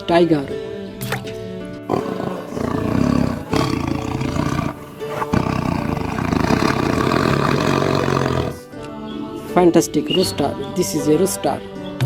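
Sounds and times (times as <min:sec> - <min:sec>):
faint background music: 0:00.0 - 0:12.0
tiger roaring and growling: 0:01.9 - 0:08.7.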